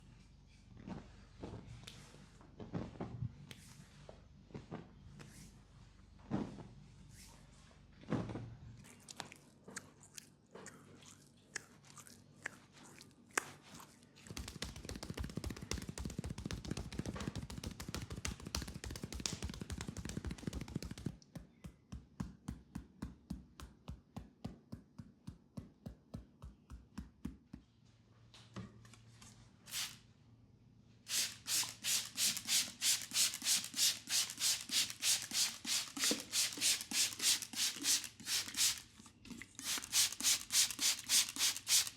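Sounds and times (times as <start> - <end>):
palms stroking skin: 13.4 - 21.1
hands rubbing skin: 13.4 - 21.2, 31.2 - 38.9.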